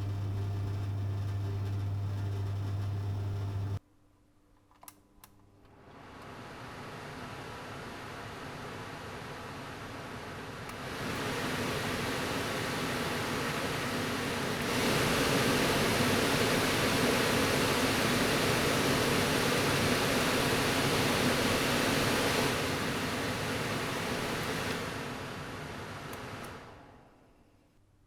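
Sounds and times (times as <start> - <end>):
extractor fan whooshing: 10.2 - 27.2.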